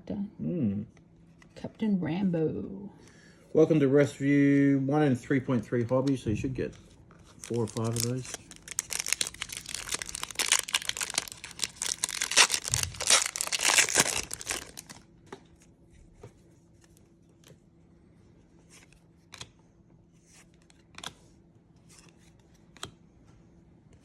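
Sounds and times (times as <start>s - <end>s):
cards rustling and clicking: 5.6s - 17.6s, 18.6s - 19.6s, 20.2s - 23.0s
wrapper tearing and crinkling: 7.2s - 15.0s.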